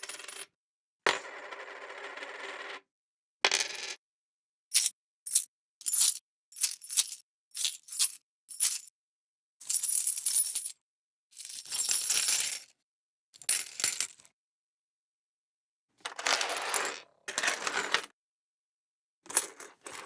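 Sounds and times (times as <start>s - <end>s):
coins dropping clinks: 4.7s - 8.9s
coins rattling: 4.7s - 8.9s, 9.6s - 10.7s, 11.4s - 12.6s.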